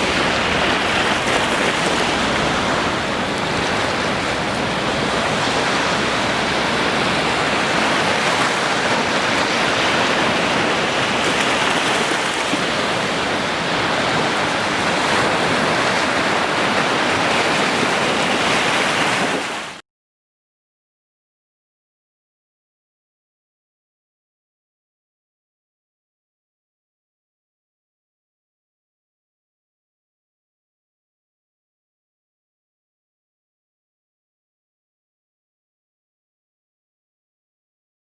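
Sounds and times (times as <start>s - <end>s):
ocean waves washing ashore: 0.0s - 19.8s.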